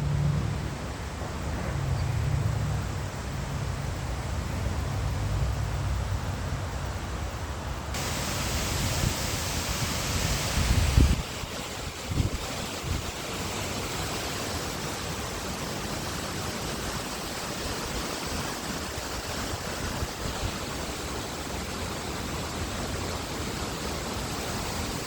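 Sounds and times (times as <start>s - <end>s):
wind buffeting microphone: 8.0s - 21.0s
strong wind gusting: 8.0s - 22.7s
bright hiss: 8.0s - 25.0s.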